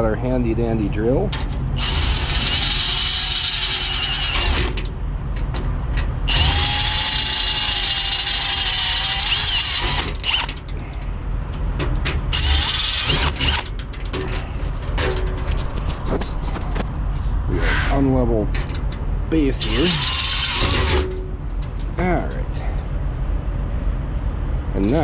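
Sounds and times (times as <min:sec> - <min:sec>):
power drill drilling: 0:01.8 - 0:04.8, 0:06.3 - 0:10.6, 0:12.3 - 0:13.7, 0:19.6 - 0:21.2
knocks and clatter: 0:04.3 - 0:06.2, 0:11.5 - 0:16.9, 0:18.5 - 0:19.1.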